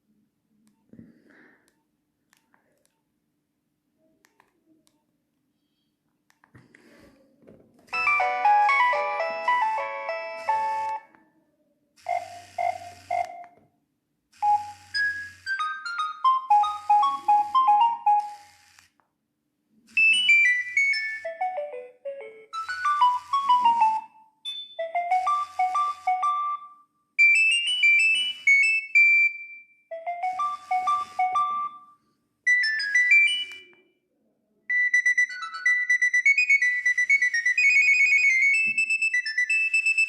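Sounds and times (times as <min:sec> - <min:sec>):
mobile phone ringtone melodies: 0:07.9 - 0:11.1, 0:14.4 - 0:18.7, 0:20.0 - 0:33.8, 0:34.7 - 0:40.0.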